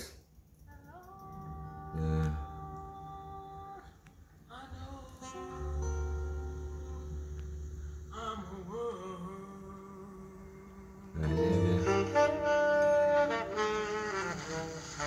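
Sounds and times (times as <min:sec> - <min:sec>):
music through tube amplifier speaker: 0:04.7 - 0:10.1, 0:11.0 - 0:15.0.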